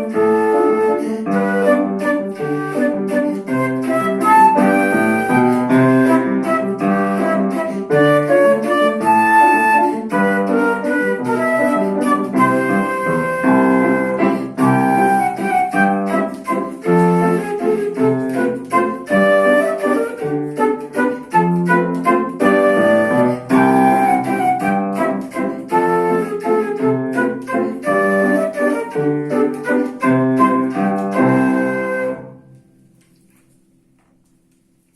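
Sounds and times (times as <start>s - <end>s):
flute melody: 0.0s - 33.0s
piano chords: 0.0s - 34.5s.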